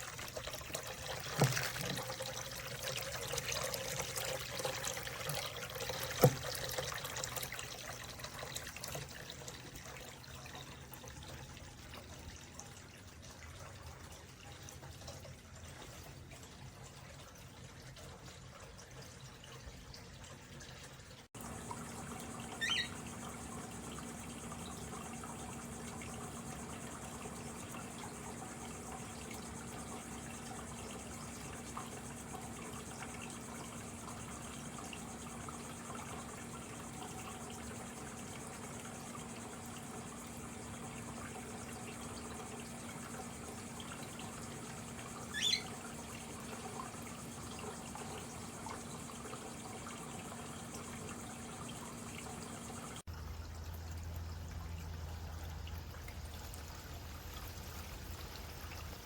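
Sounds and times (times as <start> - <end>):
fountain water trickling and splashing: 0.0 - 59.0
bird chirping: 22.0 - 24.8, 45.2 - 45.8.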